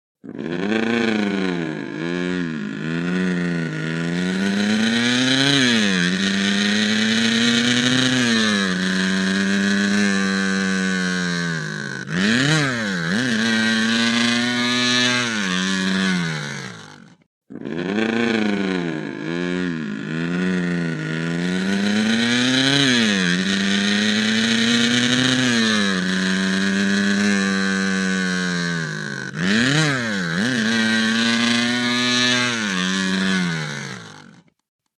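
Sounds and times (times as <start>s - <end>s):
cartoon race car engine revving: 0.2s - 34.6s.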